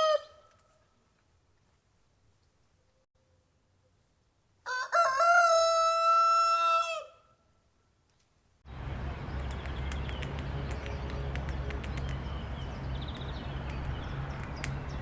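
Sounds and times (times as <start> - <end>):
rooster crowing: 0.0 - 0.4, 4.6 - 7.2
noisy outdoor background: 0.0 - 15.0.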